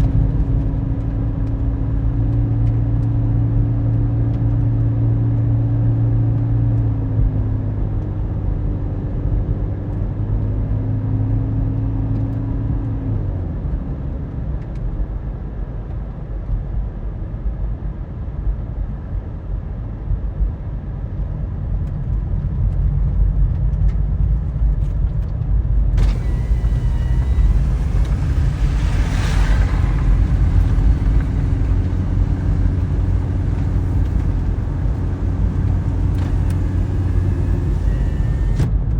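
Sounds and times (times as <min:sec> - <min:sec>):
car engine and tyre drone: 0:00.0 - 0:16.8, 0:24.5 - 0:38.9
whoosh: 0:26.0 - 0:38.7.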